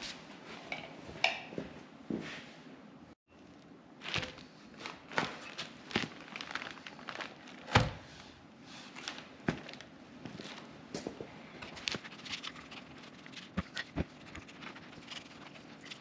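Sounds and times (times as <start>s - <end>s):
crinkling rustles: 3.4s - 8.0s, 8.8s - 10.8s, 11.6s - 16.0s.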